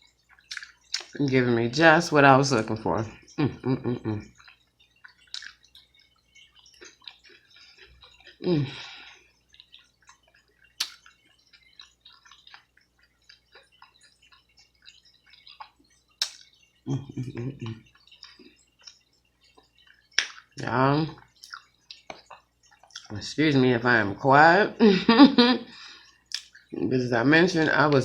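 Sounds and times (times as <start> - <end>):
wet chewing and lip smacking: 0.0 - 1.6, 2.4 - 23.3, 25.6 - 26.8.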